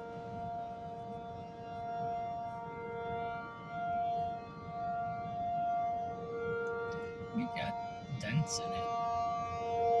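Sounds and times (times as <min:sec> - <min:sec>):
warning siren steady chord: 0:00.0 - 0:10.0.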